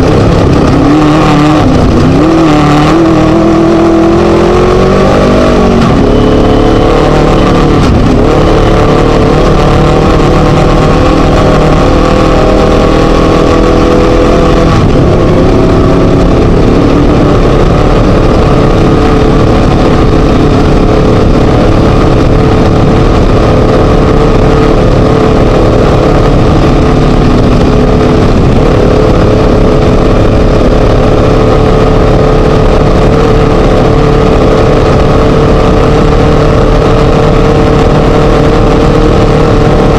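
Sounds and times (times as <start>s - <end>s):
race buggy engine revving: 0.0s - 39.9s.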